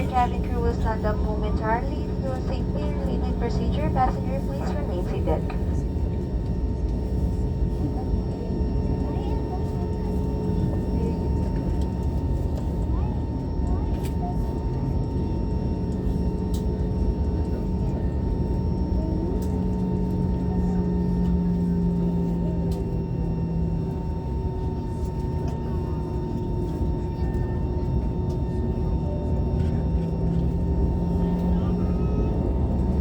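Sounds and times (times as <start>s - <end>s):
droning tones: 0.0s - 5.8s
airliner cabin hum: 0.0s - 8.1s.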